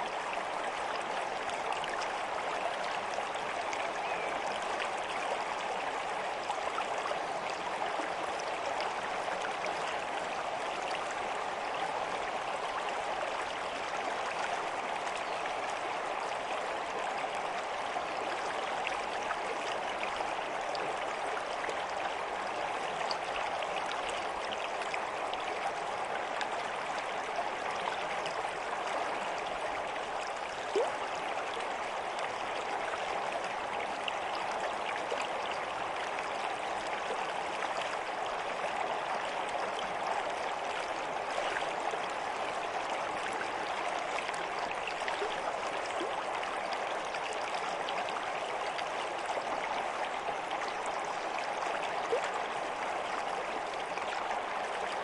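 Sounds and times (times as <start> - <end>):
stream water babbling: 0.0 - 55.0.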